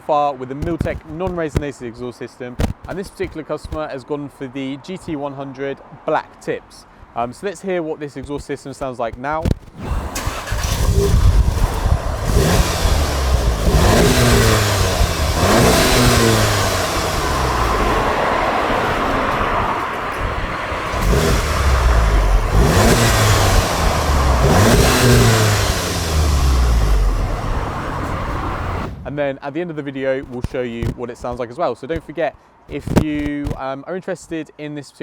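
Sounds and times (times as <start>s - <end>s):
car engine revving and idling: 9.8s - 29.1s.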